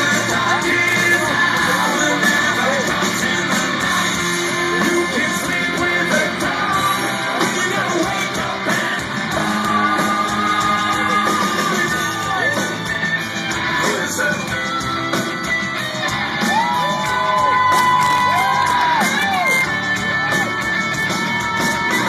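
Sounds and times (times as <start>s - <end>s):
person singing or yelling: 0.0s - 12.9s
hard rock band playing: 0.0s - 22.0s.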